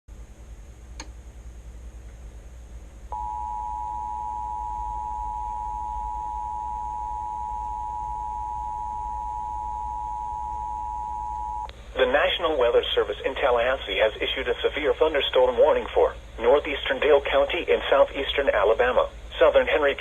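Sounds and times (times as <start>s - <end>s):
faint hum: 0.1s - 20.0s
loud steady electronic alert tone: 3.1s - 12.2s.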